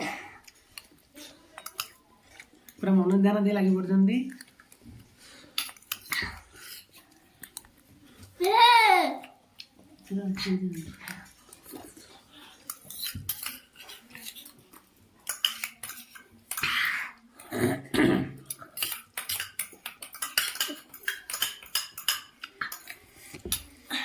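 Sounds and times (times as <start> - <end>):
cutlery clinking on plates: 12.6 - 14.6, 15.2 - 16.7, 18.4 - 23.8.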